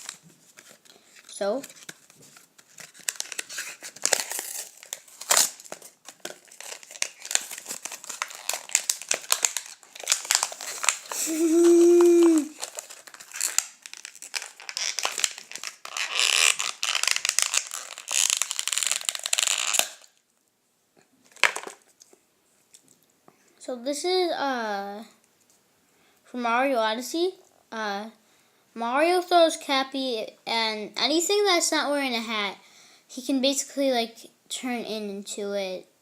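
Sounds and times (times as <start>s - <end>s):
wrapper crinkling: 0.0s - 20.3s, 21.2s - 23.0s
person humming a note: 11.2s - 12.5s.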